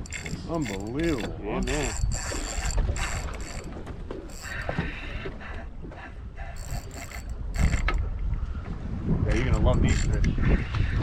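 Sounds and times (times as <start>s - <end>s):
fishing reel drag buzzing: 0.0s - 5.0s, 6.6s - 8.0s.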